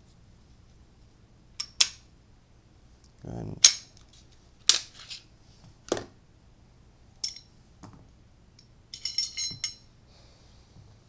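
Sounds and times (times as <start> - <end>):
ringing metal clinks: 8.9 - 9.9.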